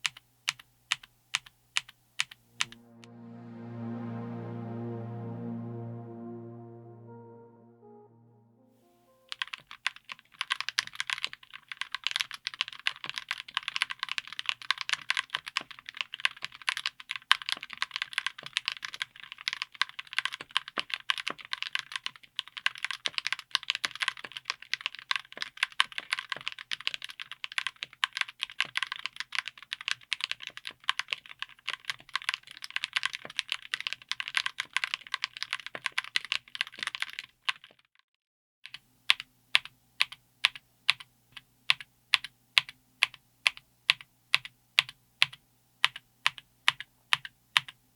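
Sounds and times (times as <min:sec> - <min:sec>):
fast typing on mechanical keyboard: 0:00.0 - 0:02.4, 0:09.4 - 0:37.8, 0:38.7 - 0:47.8.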